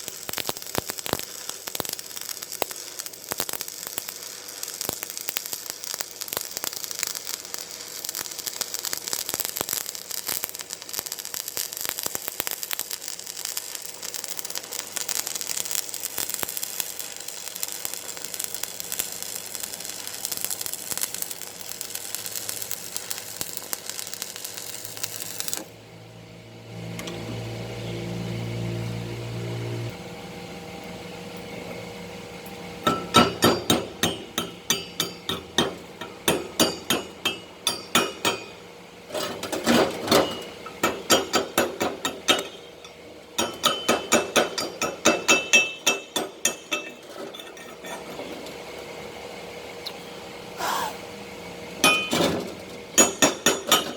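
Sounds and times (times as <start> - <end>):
welding arc crackling: 0.0 - 30.0, 31.6 - 53.9
hammer tapping: 32.9 - 38.6, 43.4 - 46.9.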